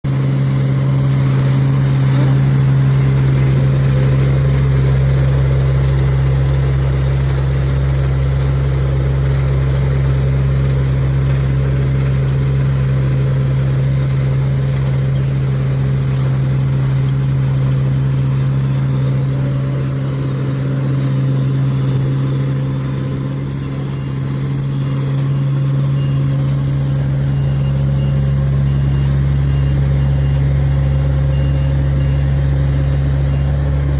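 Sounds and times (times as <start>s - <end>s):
diesel engine running: 0.0s - 33.9s
faint high beeps: 18.0s - 33.9s.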